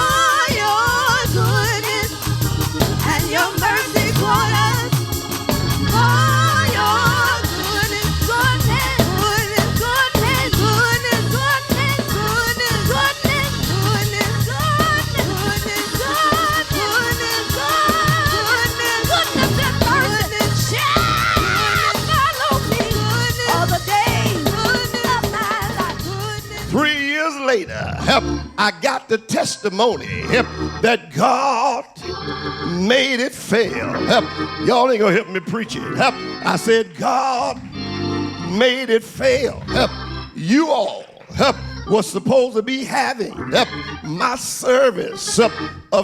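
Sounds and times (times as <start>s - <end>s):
solo voice singing with vibrato: 0.0s - 2.3s, 3.0s - 5.0s, 5.9s - 27.0s, 38.4s - 46.0s
bass and drums: 0.0s - 26.9s
organ: 0.0s - 46.0s.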